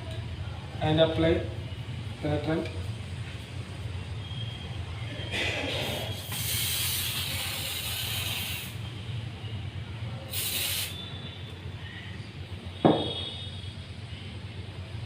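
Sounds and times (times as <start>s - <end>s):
aerosol can hissing spray: 5.9s - 8.8s, 10.3s - 11.0s.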